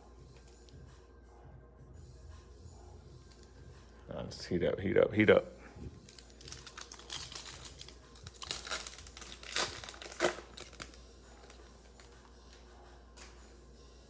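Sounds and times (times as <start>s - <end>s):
plastic wrapper crinkling: 6.0s - 12.1s.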